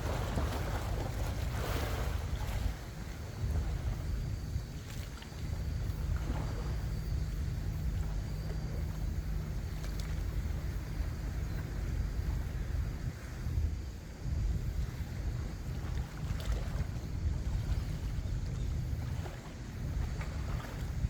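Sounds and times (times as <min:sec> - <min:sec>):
sea waves washing: 0:00.0 - 0:10.9
wind buffeting microphone: 0:00.0 - 0:21.0.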